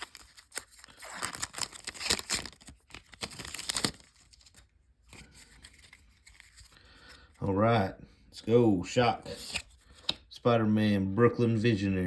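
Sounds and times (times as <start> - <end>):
wrapper tearing and crinkling: 0.0 - 4.6.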